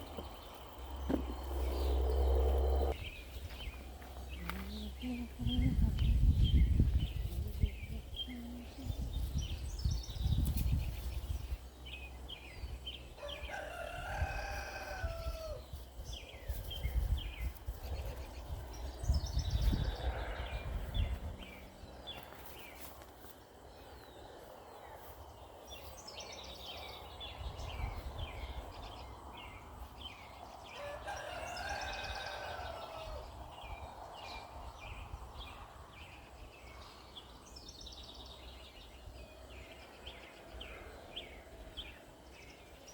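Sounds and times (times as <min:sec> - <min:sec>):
low rumbling noise: 0:00.0 - 0:10.3, 0:16.9 - 0:22.8
songbirds chirping: 0:00.0 - 0:42.9
rooster crowing: 0:13.2 - 0:15.6, 0:30.6 - 0:33.3.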